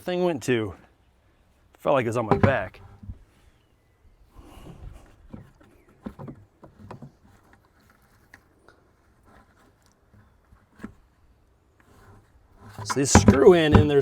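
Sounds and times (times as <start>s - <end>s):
plastic bucket knocks and clicks: 2.3s - 2.7s, 12.7s - 14.0s.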